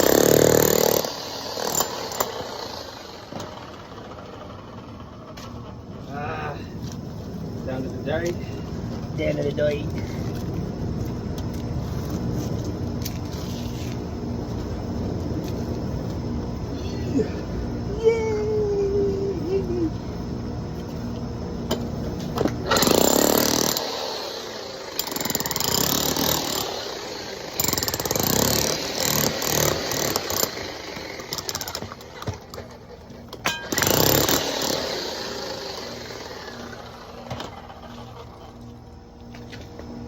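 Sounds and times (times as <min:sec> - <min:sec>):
demolition hammer chipping concrete: 0:00.0 - 0:04.7, 0:22.6 - 0:32.8, 0:33.5 - 0:38.0.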